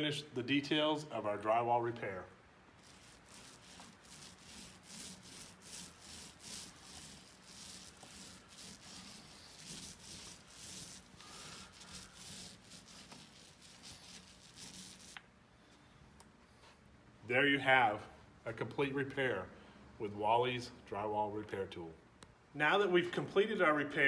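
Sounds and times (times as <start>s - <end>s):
paint brush scraping strokes: 2.8s - 15.2s.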